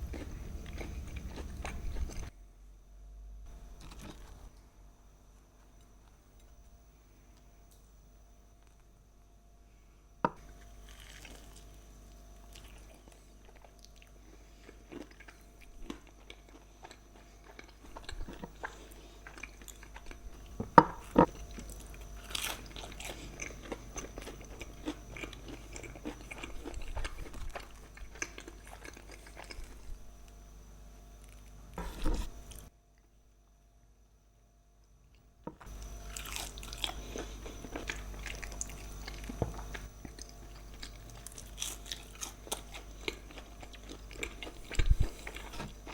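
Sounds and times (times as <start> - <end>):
chewing and crunching food: 0.0 - 2.4, 3.5 - 4.6, 10.3 - 30.5, 35.1 - 45.9.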